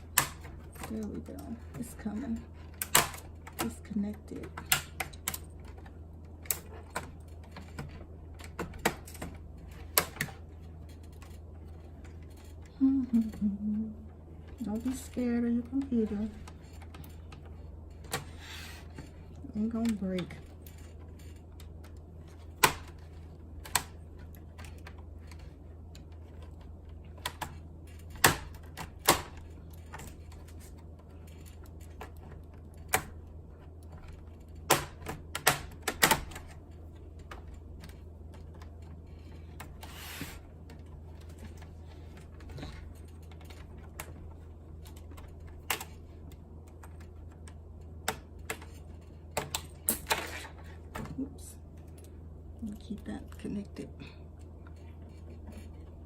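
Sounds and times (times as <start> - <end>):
steady low hum: 0.0 - 56.0.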